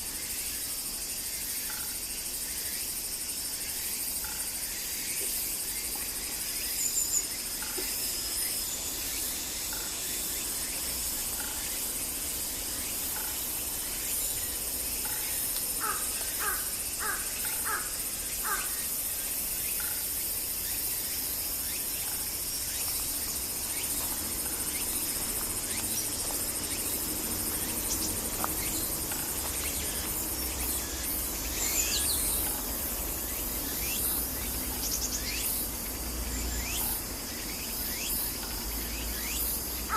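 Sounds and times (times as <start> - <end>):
insects droning: 0.0 - 39.9
crow cawing: 15.8 - 18.7.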